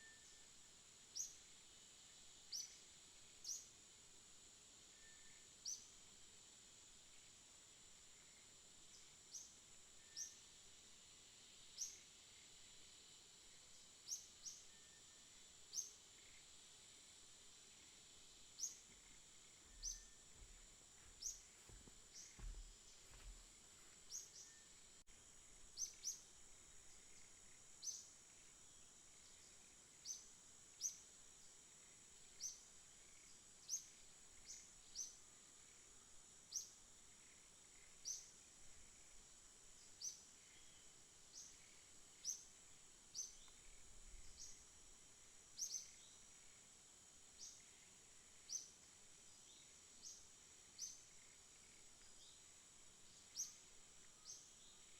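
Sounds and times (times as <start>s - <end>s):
steady high hiss: 0.0s - 54.9s
birds chirping: 18.6s - 24.5s.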